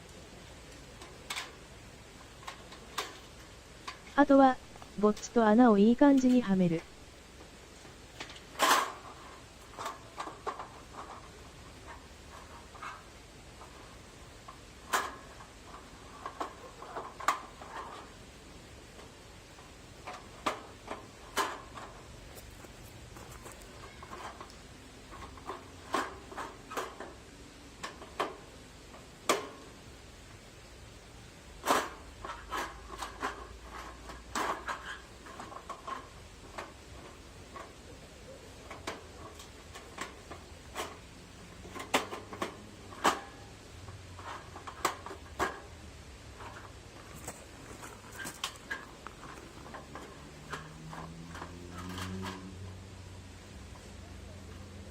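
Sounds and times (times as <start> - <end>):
sheet metal clicks and clanks: 8.2 - 18.1.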